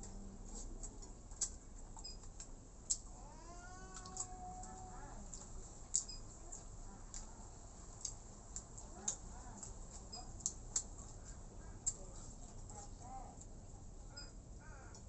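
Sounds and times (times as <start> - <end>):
chewing clicks and smacks: 0.0 - 3.1, 3.9 - 7.3, 8.0 - 13.5.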